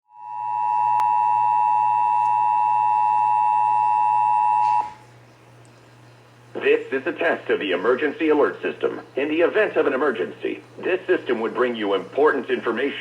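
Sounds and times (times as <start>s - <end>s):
two-tone alert signal: 0.1s - 5.0s
faint hum: 0.1s - 13.0s.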